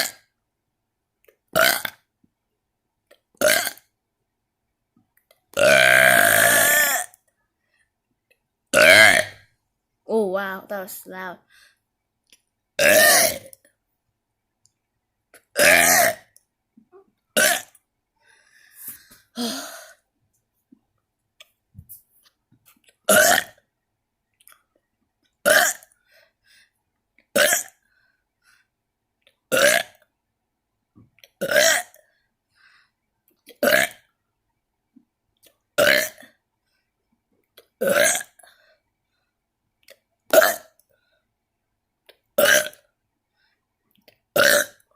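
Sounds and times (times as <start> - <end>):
person burping: 0.0 - 0.2, 1.5 - 2.1, 3.4 - 3.9, 5.5 - 7.2, 8.7 - 9.4, 12.8 - 13.6, 15.4 - 17.8, 19.3 - 20.0, 23.0 - 23.6, 25.4 - 26.0, 27.3 - 27.8, 29.5 - 30.0, 31.4 - 32.0, 33.5 - 34.1, 35.8 - 36.4, 37.8 - 38.4, 40.3 - 40.8, 42.4 - 42.9, 44.3 - 44.9.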